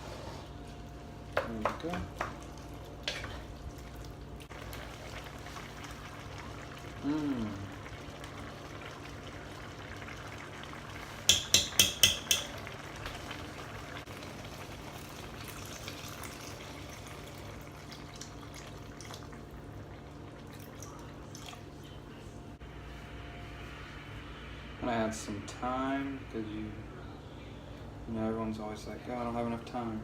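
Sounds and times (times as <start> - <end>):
sauce sizzling and bubbling: 2.0 - 22.0.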